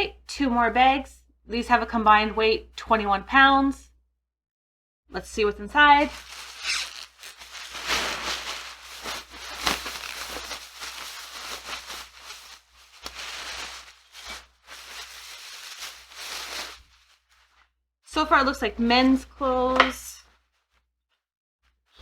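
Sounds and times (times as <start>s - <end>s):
plastic bag crinkling and tearing: 6.0s - 17.6s.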